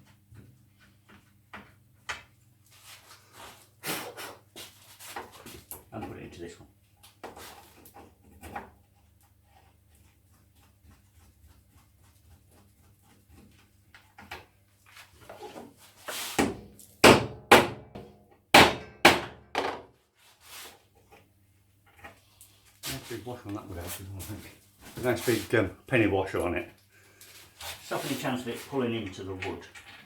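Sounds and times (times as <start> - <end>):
hammer knocking on wood: 16.4 - 19.9.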